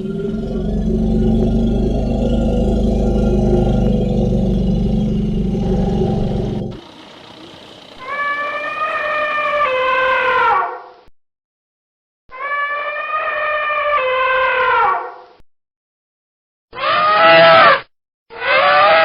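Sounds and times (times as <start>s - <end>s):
elephant low rumble: 0.0s - 10.3s
elephant trumpet call: 0.0s - 10.8s.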